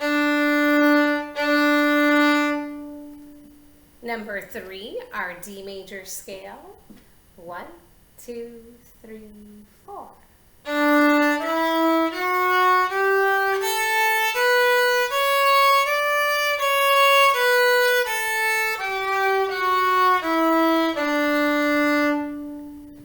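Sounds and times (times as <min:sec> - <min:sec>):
viola playing a scale: 0:00.0 - 0:03.8, 0:10.6 - 0:23.0.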